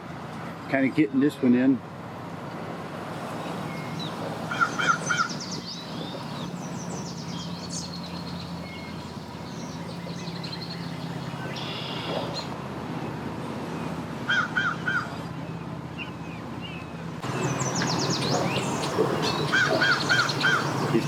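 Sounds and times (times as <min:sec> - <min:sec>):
low engine hum: 0:00.0 - 0:21.0
bird calling: 0:03.3 - 0:12.6, 0:14.3 - 0:15.3, 0:16.0 - 0:21.0
high chattering bird calls: 0:03.3 - 0:12.6, 0:16.0 - 0:21.0.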